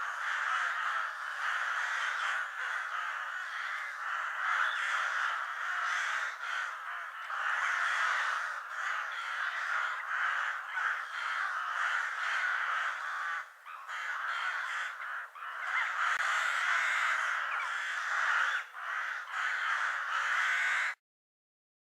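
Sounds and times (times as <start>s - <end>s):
ravens cawing and croaking: 0.0s - 21.0s.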